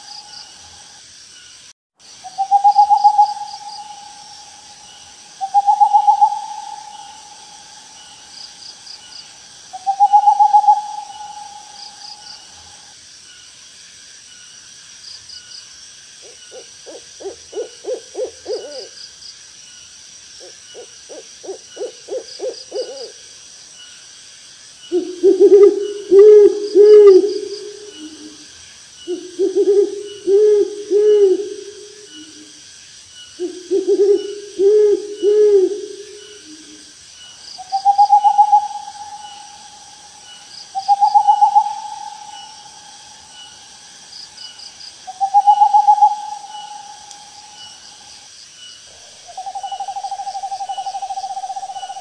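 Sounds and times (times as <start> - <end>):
faint high rhythmic chirping: 0.0 - 52.0
owl hooting: 2.2 - 8.4, 9.7 - 12.8, 16.2 - 19.0, 20.4 - 23.2, 24.9 - 28.4, 29.1 - 32.6, 33.4 - 36.8, 37.6 - 43.6, 45.1 - 47.8, 49.0 - 52.0
quavering owl trills: 2.3 - 8.0, 9.8 - 12.6, 16.2 - 19.0, 20.4 - 23.2, 24.9 - 28.4, 29.1 - 32.6, 33.4 - 36.8, 37.6 - 43.5, 45.1 - 47.8, 49.3 - 52.0.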